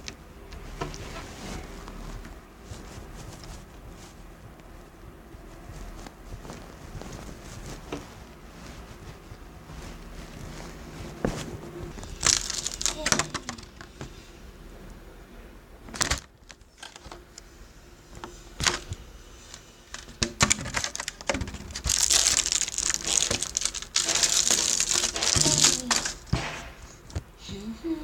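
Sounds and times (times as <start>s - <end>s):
slime crackling and clicking: 12.0s - 14.0s, 18.6s - 27.2s.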